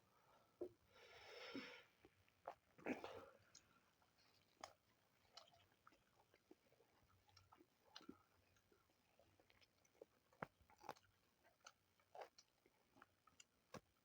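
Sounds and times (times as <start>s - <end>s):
person chewing: 3.4s - 13.8s.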